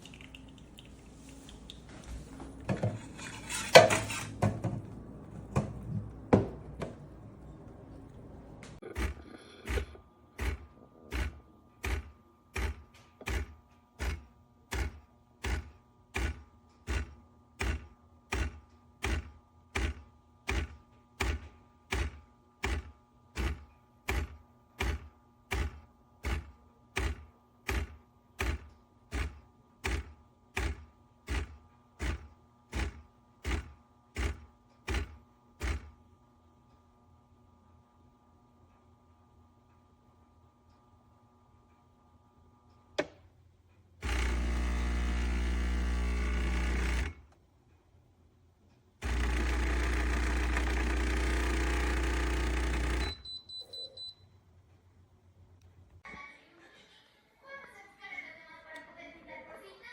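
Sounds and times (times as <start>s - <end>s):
espresso machine hum: 0.0s - 36.0s, 44.0s - 47.3s, 49.0s - 53.1s
espresso machine pump thumping: 2.3s - 7.5s, 8.6s - 36.0s, 44.0s - 47.1s, 49.0s - 53.0s.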